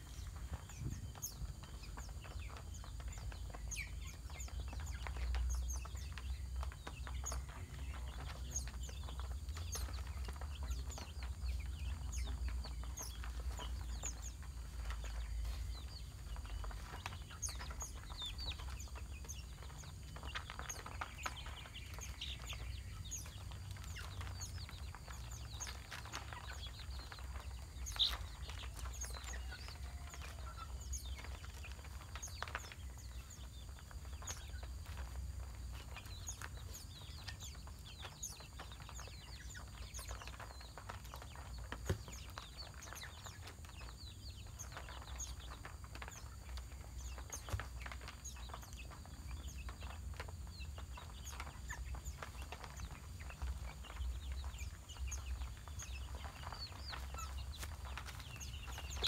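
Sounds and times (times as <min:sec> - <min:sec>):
chickens clucking: 0:00.0 - 0:59.0
small birds chirping: 0:00.0 - 0:59.0.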